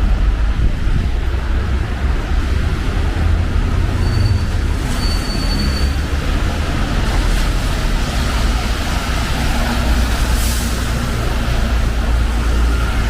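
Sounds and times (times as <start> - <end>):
city traffic rumble: 0.0 - 13.0
rain hiss on wet road: 5.7 - 13.0.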